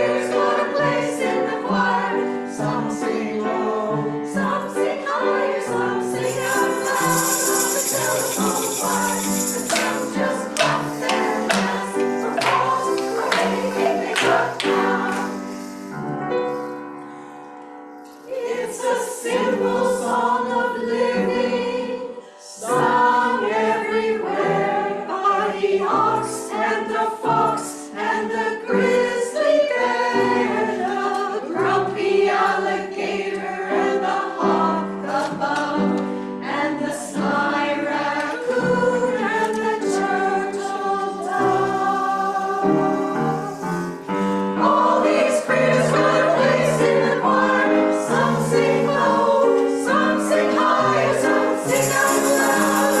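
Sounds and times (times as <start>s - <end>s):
choir singing: 0.0s - 16.9s, 18.1s - 53.0s.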